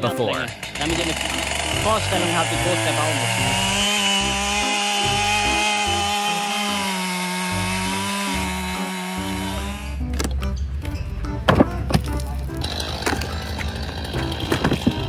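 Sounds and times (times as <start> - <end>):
chainsaw engine running fast: 0.0 - 10.1, 11.7 - 15.0
sharp knocks: 11.5 - 12.2.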